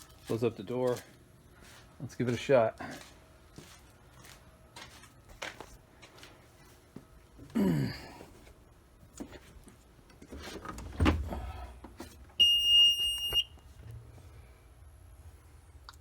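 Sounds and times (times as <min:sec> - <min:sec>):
warning buzzer beep: 0:12.4 - 0:13.6.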